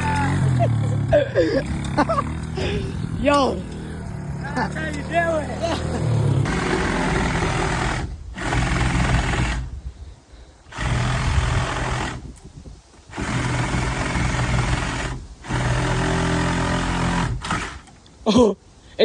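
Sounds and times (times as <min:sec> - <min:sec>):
vehicle engine running rough: 0:00.0 - 0:09.9.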